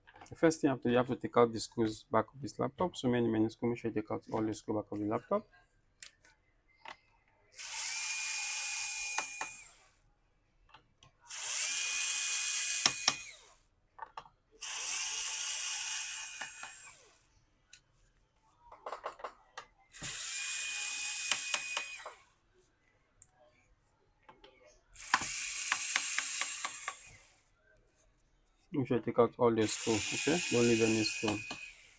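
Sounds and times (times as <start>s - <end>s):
electric screwdriver whine: 11.3s - 13.5s, 20.0s - 22.2s, 25.0s - 27.3s, 29.6s - 31.9s.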